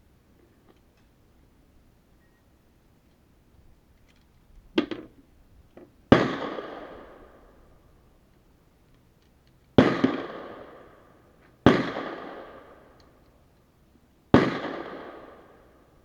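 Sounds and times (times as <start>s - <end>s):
suppressed pistol shots echoing: 6.1s - 7.7s, 9.8s - 11.0s, 11.6s - 13.0s, 14.3s - 15.8s.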